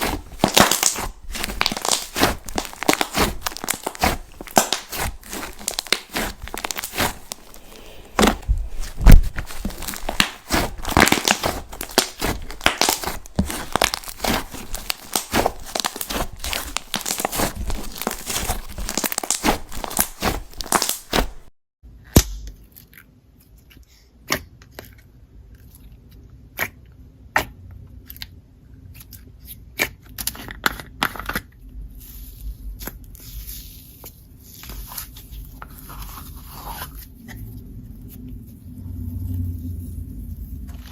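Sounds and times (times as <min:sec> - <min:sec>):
slime squished by hand: 0:00.0 - 0:21.5.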